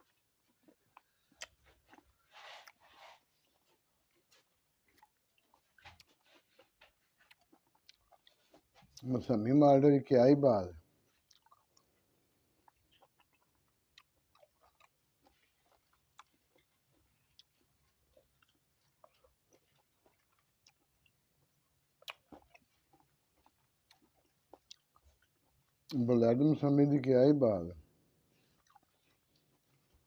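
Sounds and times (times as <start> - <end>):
fruit chewing mouth clicks: 0.0 - 9.1, 11.1 - 11.9, 12.6 - 26.0.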